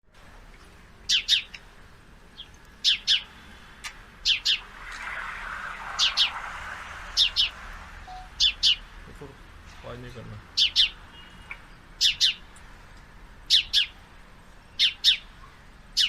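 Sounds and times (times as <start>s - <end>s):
sparrow double chirps: 1.1s - 1.5s, 2.4s - 3.5s, 4.2s - 4.7s, 7.2s - 8.9s, 10.6s - 12.5s, 13.5s - 14.0s.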